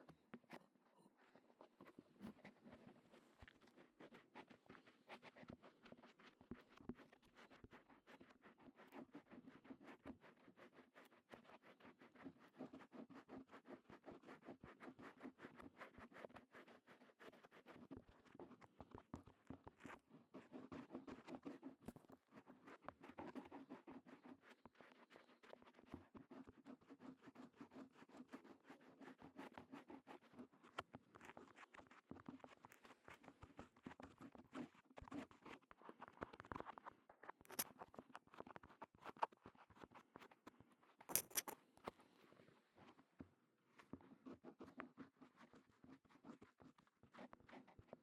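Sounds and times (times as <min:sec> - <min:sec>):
ear cleaning scratching and rubbing: 0:41.1 - 0:41.6.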